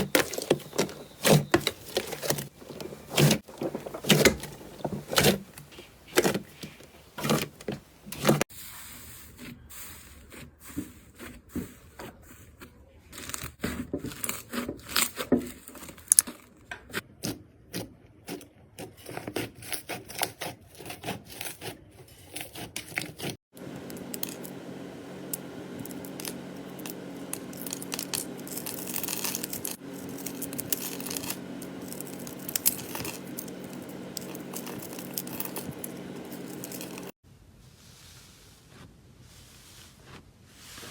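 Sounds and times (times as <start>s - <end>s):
low hum: 23.6s - 37.2s.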